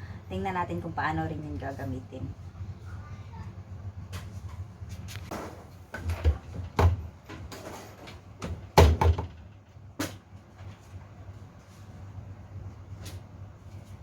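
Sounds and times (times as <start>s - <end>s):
low steady hum: 0.0s - 14.0s
door knocks and bangs: 8.5s - 9.4s.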